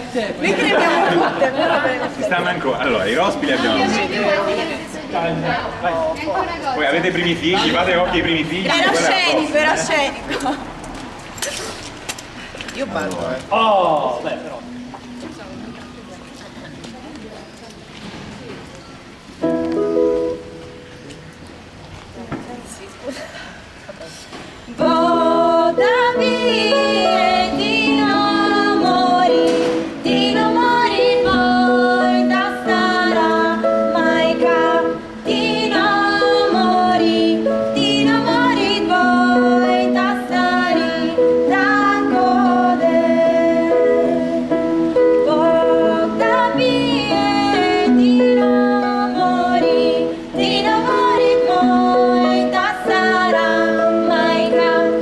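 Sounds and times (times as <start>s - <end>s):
person singing with instruments: 24.7s - 55.0s.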